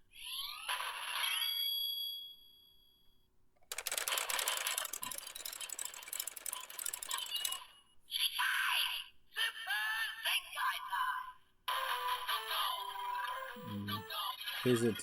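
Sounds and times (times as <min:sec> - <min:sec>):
toy rapid clicking clatter: 0:03.6 - 0:07.7.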